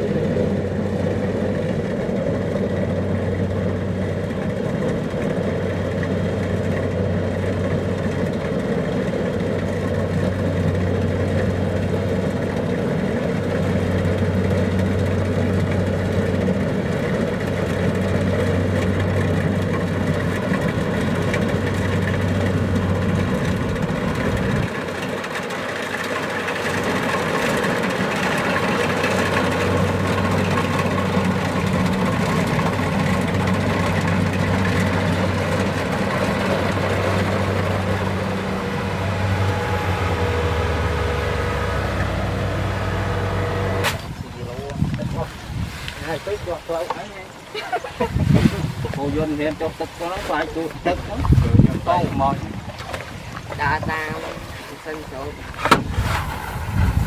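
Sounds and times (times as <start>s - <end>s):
diesel engine humming: 0.0s - 45.6s.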